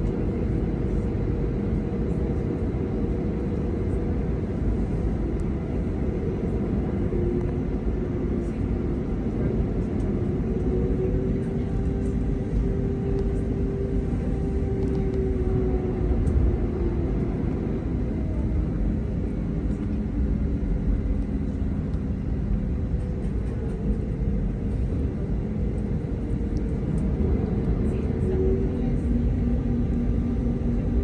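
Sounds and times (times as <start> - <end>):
airplane cabin rumble: 0.0 - 31.0.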